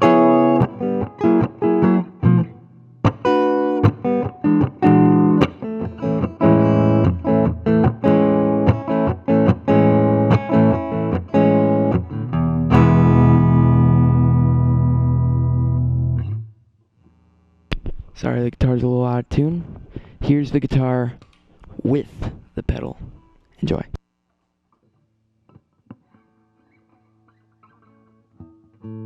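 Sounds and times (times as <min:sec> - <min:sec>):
guitar picked notes and chords: 0:00.0 - 0:16.7, 0:25.4 - 0:29.0.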